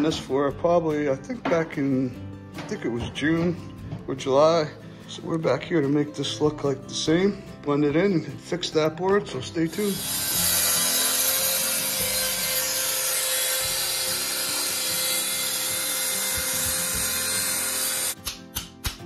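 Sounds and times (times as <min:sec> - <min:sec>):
plucked guitar music: 0:00.0 - 0:19.0
power tool cutting wood: 0:09.6 - 0:18.3.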